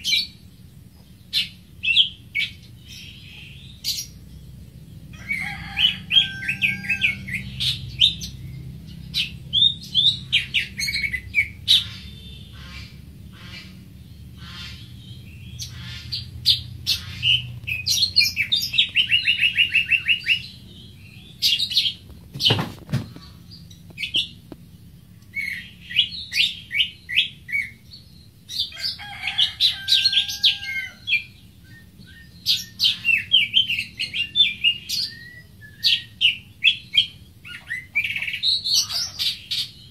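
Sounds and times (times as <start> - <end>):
bird singing high chirps: 14.2 - 22.0, 25.3 - 29.1, 29.8 - 39.9.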